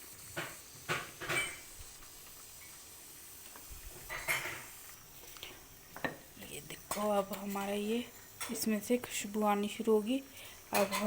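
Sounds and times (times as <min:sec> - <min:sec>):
faint steady hiss: 0:00.0 - 0:11.0
metal spoon scraping a pan: 0:00.3 - 0:01.8.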